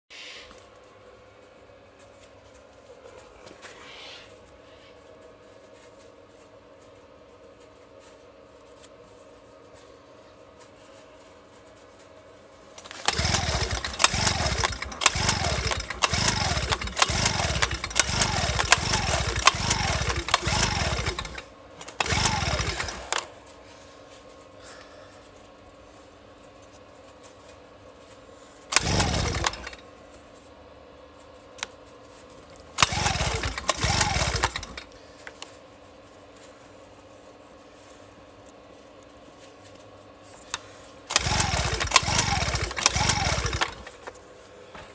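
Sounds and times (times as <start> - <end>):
engine turning over: 12.8 - 23.4, 28.7 - 29.8, 32.6 - 35.0, 41.1 - 44.2
recoil starter pulls whirring: 12.8 - 23.5, 28.7 - 29.9, 32.5 - 35.6, 40.4 - 44.2.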